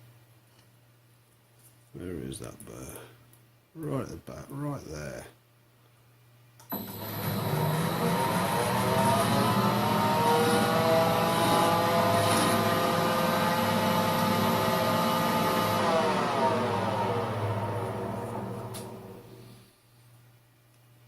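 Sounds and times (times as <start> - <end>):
lathe whining: 6.7 - 19.6
low hum: 6.7 - 20.5.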